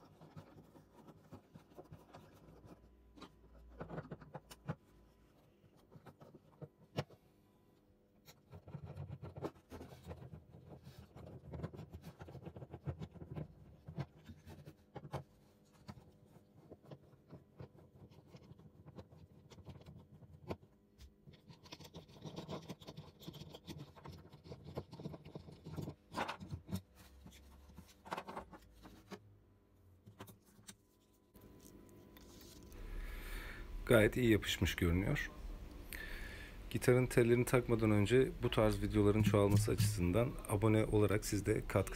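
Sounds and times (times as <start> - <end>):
scratching and rubbing on guitar: 37.1 - 41.9.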